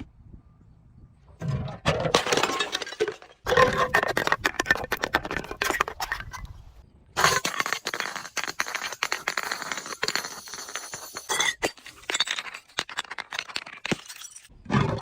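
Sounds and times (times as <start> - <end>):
glass being crushed: 1.9 - 6.4.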